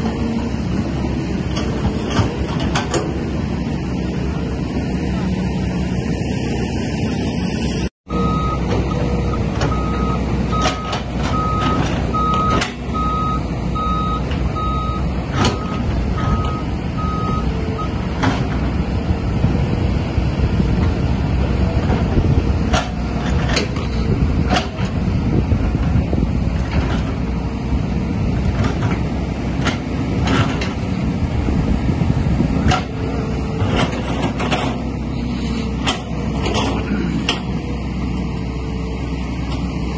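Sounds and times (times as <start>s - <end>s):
excavator engine under load: 0.0s - 39.9s
reversing alarm beeping: 8.1s - 18.0s.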